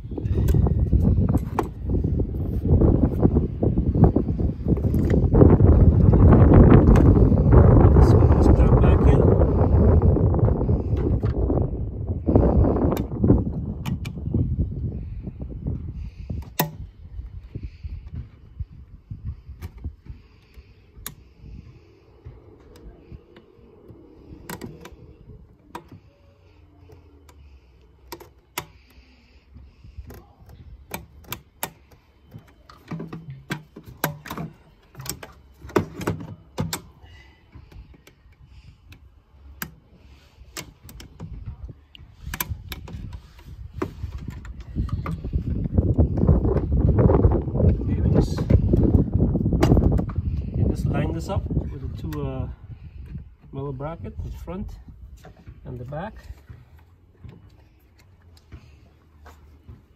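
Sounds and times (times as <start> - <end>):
plastic parts clicking and knocking: 28.0 - 29.0, 30.0 - 37.0.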